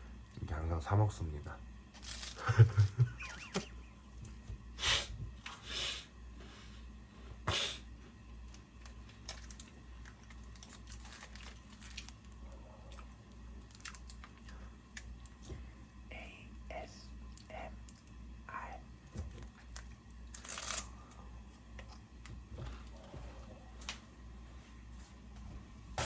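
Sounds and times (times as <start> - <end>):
snack wrapper crinkling and tearing: 2.0 - 2.5, 8.8 - 12.4, 13.5 - 15.1, 19.7 - 20.9.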